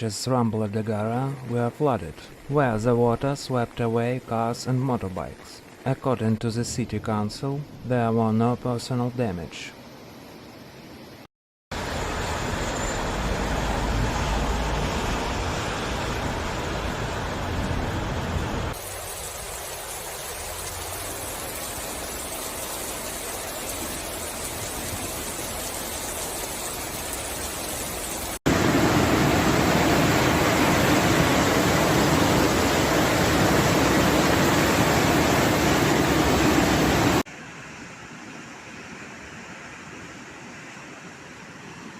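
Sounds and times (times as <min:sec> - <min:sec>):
floodwater rushing: 0:11.8 - 0:37.3
heavy rain: 0:11.8 - 0:38.0.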